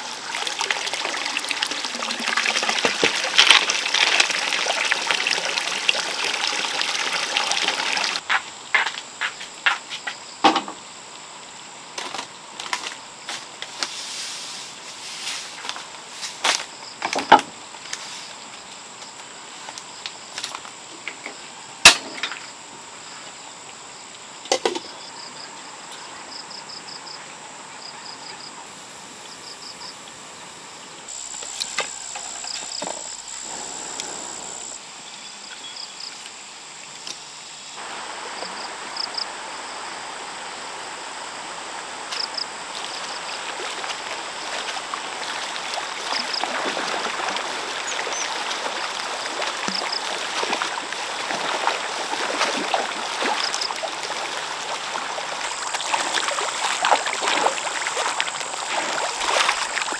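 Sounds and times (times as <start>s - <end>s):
cricket chirps: 0.0s - 59.9s
insect buzzing: 31.1s - 34.9s.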